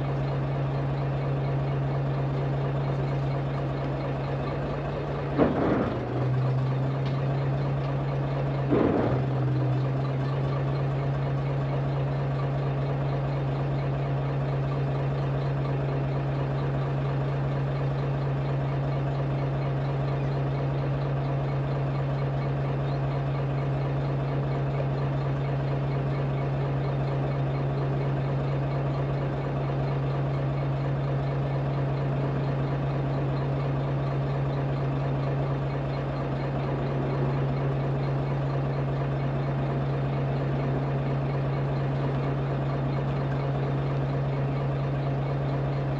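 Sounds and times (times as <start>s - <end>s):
boat engine idling: 0.0s - 45.9s
brief knock: 8.7s - 9.3s.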